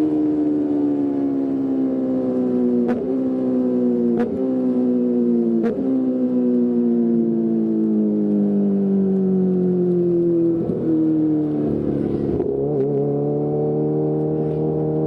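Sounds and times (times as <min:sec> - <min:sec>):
motorcycle engine revving high: 0:10.4 - 0:15.0.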